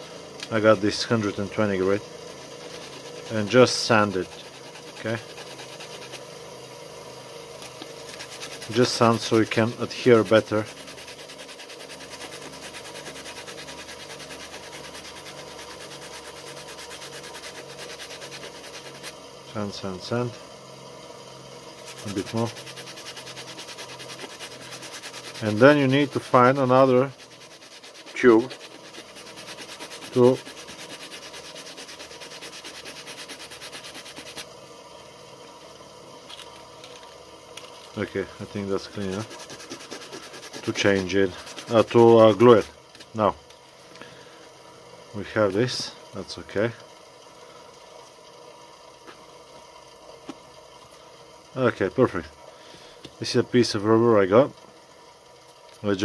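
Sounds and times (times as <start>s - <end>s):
faint steady hiss: 0.0s - 56.0s
sandpaper rubbing on rubber: 0.9s - 6.3s, 7.9s - 19.2s, 21.8s - 34.5s, 38.4s - 42.7s.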